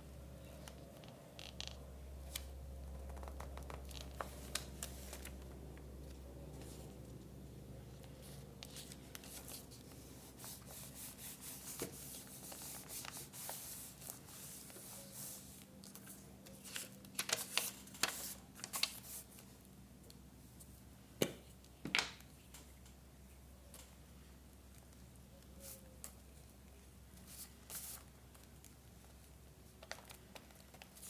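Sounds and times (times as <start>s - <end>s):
paper rubbed by hand: 9.2s - 15.6s.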